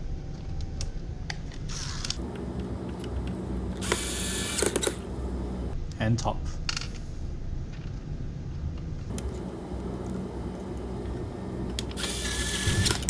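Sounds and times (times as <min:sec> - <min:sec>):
power screwdriver whirring: 0:02.2 - 0:05.8, 0:09.1 - 0:13.0
steady low rumble: 0:02.2 - 0:05.8, 0:09.1 - 0:13.0.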